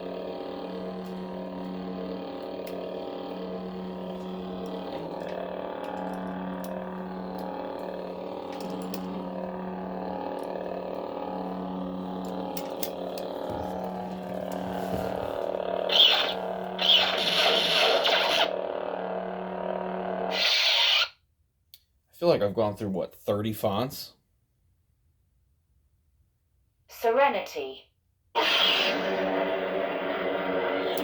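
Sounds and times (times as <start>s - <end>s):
wavering electronic hum: 0.0s - 21.1s, 28.4s - 31.0s.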